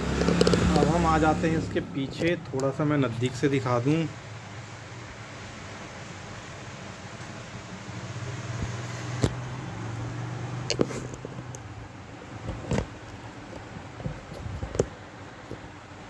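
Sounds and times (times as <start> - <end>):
hard objects clicking and knocking: 0.0 - 1.0, 10.7 - 11.7
steady low hum: 0.0 - 16.0.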